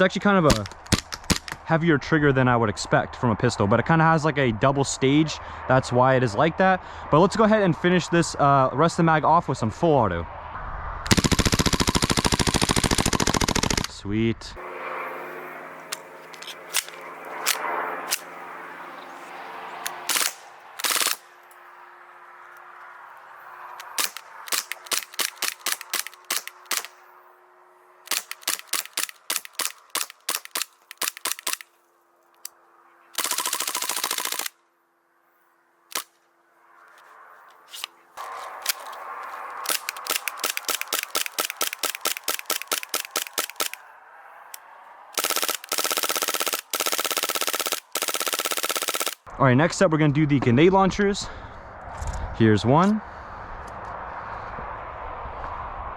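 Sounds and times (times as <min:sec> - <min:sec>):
airsoft guns firing: 0:00.5 - 0:01.6, 0:11.1 - 0:13.9, 0:19.9 - 0:21.3, 0:23.8 - 0:27.0, 0:28.1 - 0:31.7, 0:33.2 - 0:34.6, 0:39.6 - 0:43.8, 0:45.2 - 0:49.3.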